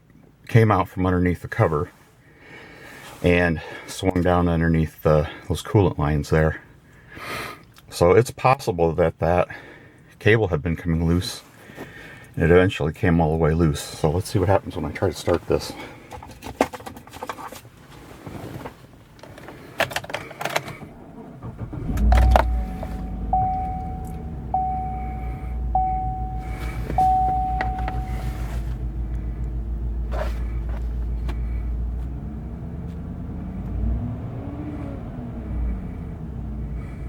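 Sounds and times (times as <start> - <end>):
pickup engine starting and idling: 20.5 - 37.0
dashboard warning chime: 21.5 - 28.9
clicks: 21.8 - 28.4.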